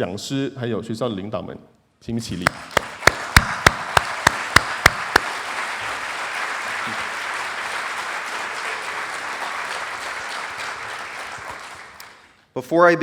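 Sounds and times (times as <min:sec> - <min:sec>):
single sharp claps: 0:02.4 - 0:12.3
audience applauding: 0:02.5 - 0:12.3.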